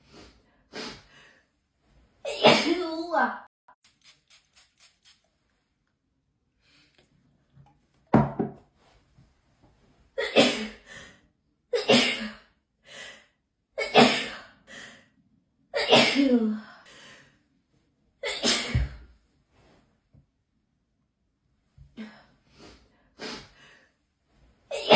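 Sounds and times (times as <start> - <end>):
person sneezing: 18.2 - 19.0.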